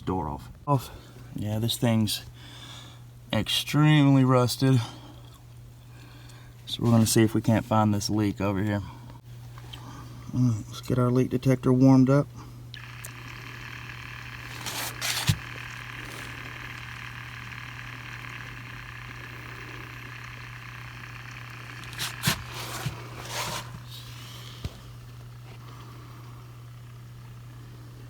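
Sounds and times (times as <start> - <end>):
low hum with hiss: 0.0 - 28.0
handling clatter and rustle: 14.5 - 16.4, 21.7 - 25.7.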